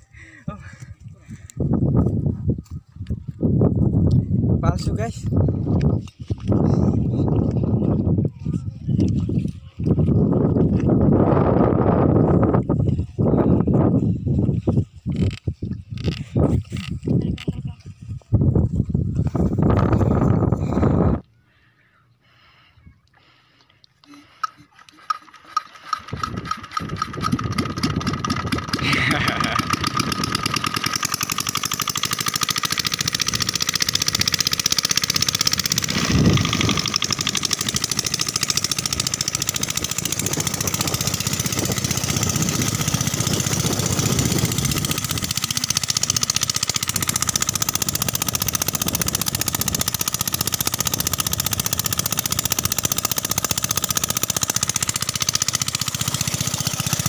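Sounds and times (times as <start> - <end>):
diesel engine chugging: 24.2 - 57.0.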